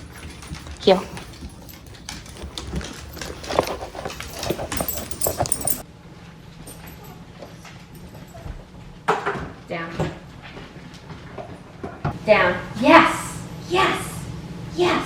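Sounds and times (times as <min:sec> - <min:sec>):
dogs whimpering: 0:00.0 - 0:05.8.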